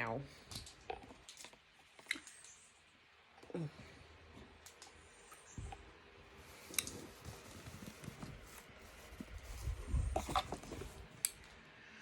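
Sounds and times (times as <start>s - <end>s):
handling rustling and bumps: 6.5s - 11.2s.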